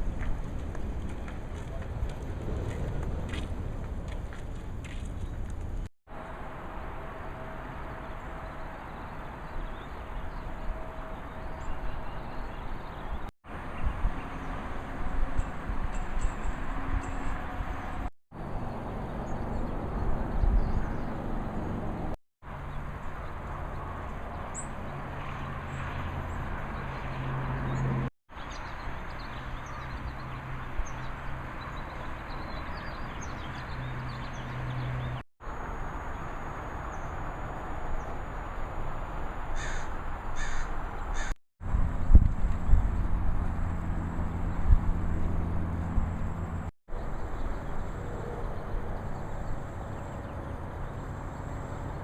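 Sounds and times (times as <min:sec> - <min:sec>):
crow cawing: 0:39.6 - 0:41.3.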